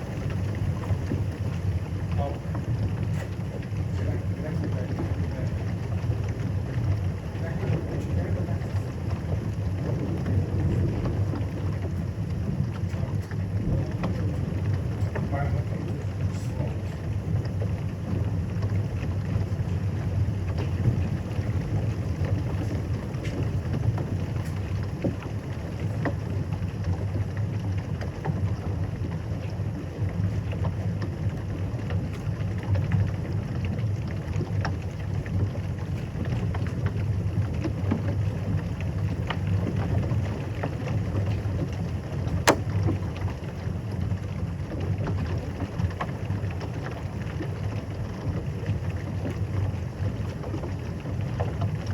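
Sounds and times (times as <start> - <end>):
heavy rain: 0.0 - 51.9
raindrops tapping: 0.0 - 51.9
sharp click: 42.5 - 42.7.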